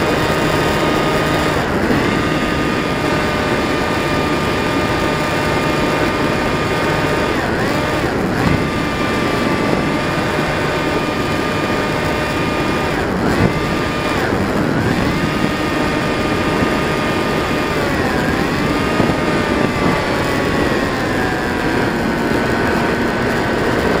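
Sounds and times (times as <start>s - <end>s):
model plane motor whining: 0.0s - 24.0s
steady rushing noise: 0.0s - 24.0s.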